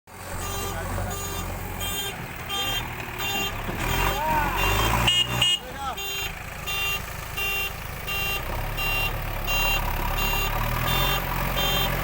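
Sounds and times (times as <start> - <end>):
diesel engine running: 0.1 - 12.0
reversing alarm beeping: 0.4 - 12.0.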